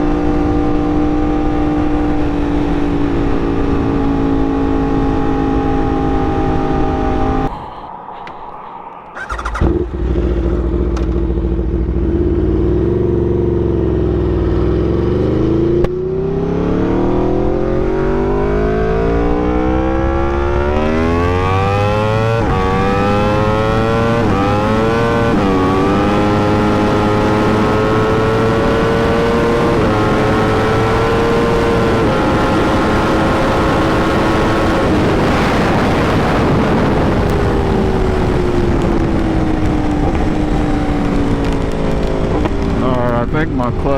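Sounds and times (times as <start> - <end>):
motorcycle engine accelerating: 0.0 - 8.3, 9.1 - 43.9
wind rushing: 5.4 - 12.3.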